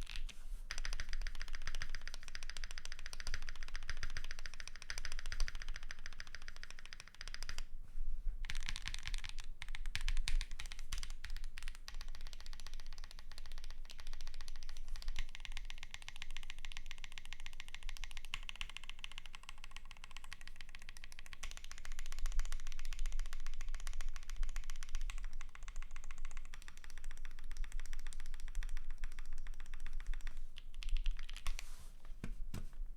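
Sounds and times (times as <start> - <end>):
mechanical keyboard typing: 0.7 - 7.6.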